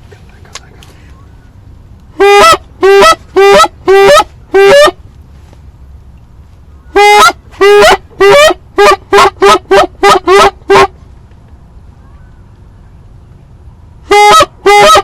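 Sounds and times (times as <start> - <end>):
goose honking: 2.2 - 5.0, 14.1 - 15.0.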